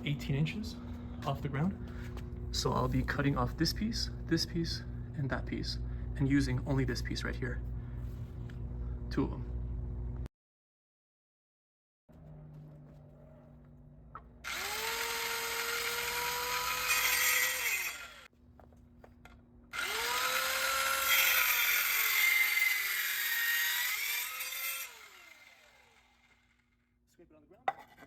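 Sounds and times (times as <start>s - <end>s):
power saw cutting wood: 14.4s - 18.3s, 19.7s - 26.6s.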